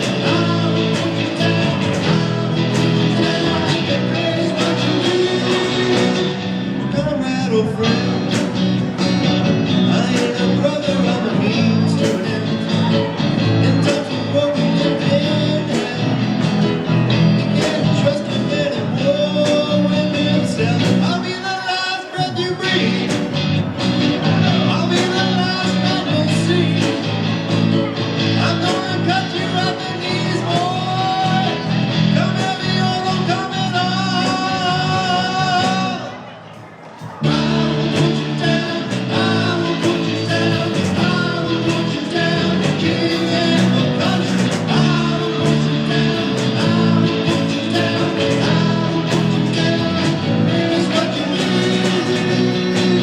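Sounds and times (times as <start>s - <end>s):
person singing: 0.0s - 36.4s, 37.0s - 53.0s
guitar: 0.0s - 53.0s
live rock band: 0.0s - 53.0s
steady drum beat: 37.0s - 53.0s.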